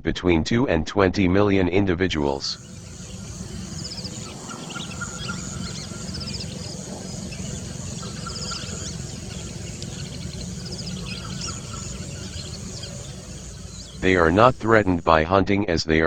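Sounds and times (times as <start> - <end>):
steady low rumble: 2.2 - 15.2
birds whistling and trilling: 2.4 - 15.1.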